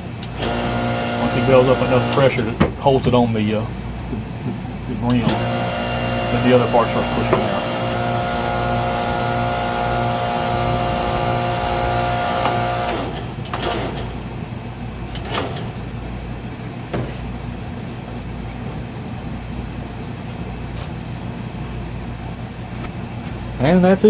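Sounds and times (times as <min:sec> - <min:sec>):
low steady hum: 0:00.0 - 0:15.2
hydraulic pump whine: 0:00.0 - 0:18.4
sharp metallic clunks: 0:02.4 - 0:03.2, 0:06.9 - 0:08.0.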